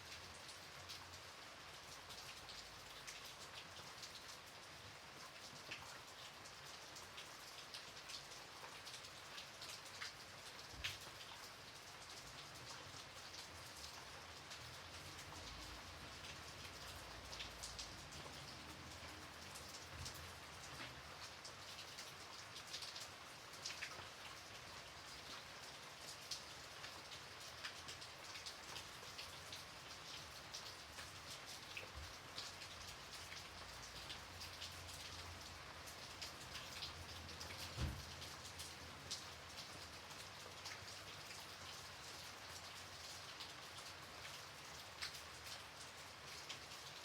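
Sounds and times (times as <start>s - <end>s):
gentle rain hiss: 0.0s - 47.0s.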